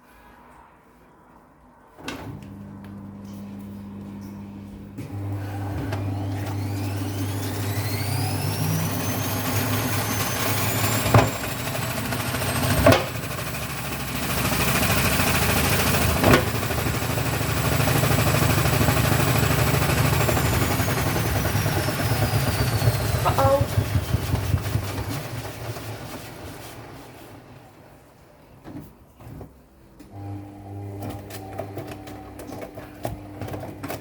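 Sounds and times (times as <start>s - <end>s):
washing machine drum spinning: 5.0s - 27.5s.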